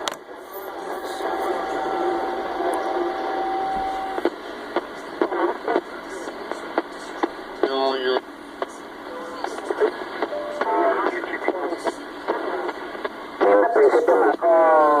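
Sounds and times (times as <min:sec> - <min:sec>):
radio static hiss: 0:00.0 - 0:15.0.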